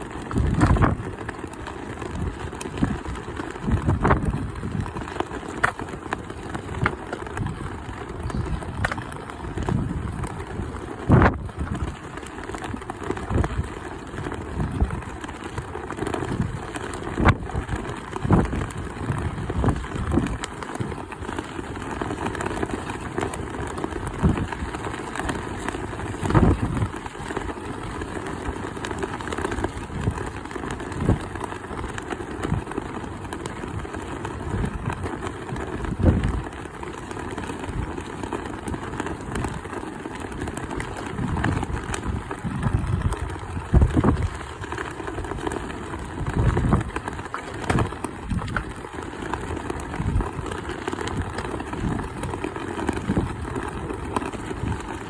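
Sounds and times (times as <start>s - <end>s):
strong wind on microphone: 0.3s - 1.1s, 2.1s - 5.0s, 7.4s - 12.0s, 13.2s - 13.7s, 14.5s - 15.1s, 16.3s - 21.0s, 24.0s - 24.8s, 25.8s - 27.0s, 34.4s - 36.5s, 41.1s - 45.3s, 46.2s - 48.8s, 49.8s - 53.6s.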